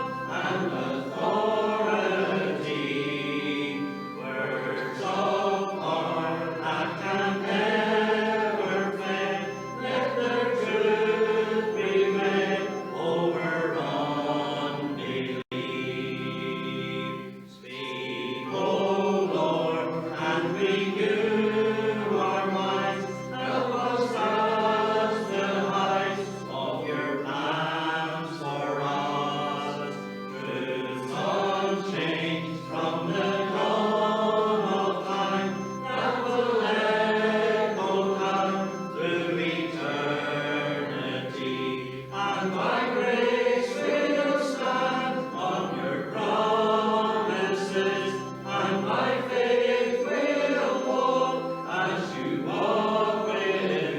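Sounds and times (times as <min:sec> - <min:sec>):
congregation singing a hymn: 0:00.0 - 0:53.9.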